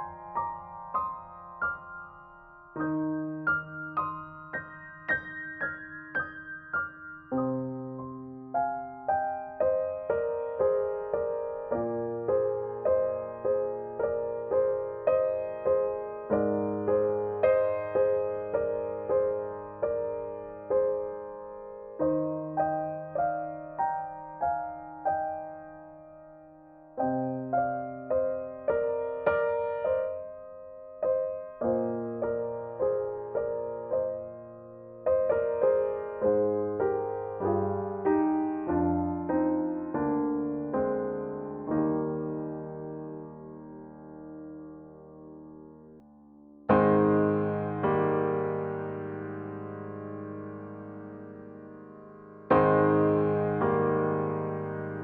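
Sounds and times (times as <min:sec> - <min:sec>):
gentle piano melody: 0:00.0 - 0:55.0
low piano bass notes: 0:40.4 - 0:55.0.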